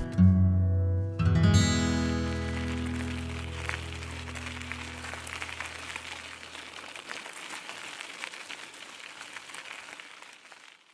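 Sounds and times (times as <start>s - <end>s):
acoustic guitar chord ringing: 0.0s - 2.8s
faint hiss with crackles: 1.7s - 10.9s.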